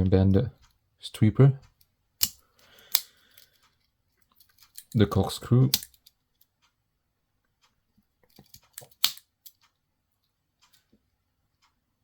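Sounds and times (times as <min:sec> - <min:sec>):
pocket knife tools clicking: 0:04.4 - 0:06.1, 0:08.3 - 0:09.6.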